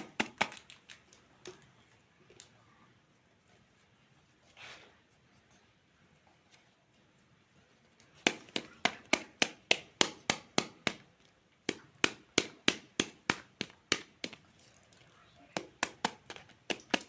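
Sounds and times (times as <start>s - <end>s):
toy knife chopping plastic fruit: 15.6s - 17.0s.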